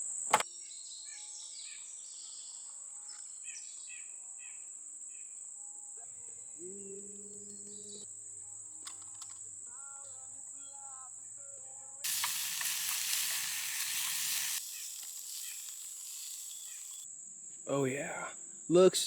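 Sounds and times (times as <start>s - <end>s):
crickets chirping: 0.0s - 19.0s
food sizzling in a pan: 12.0s - 17.1s.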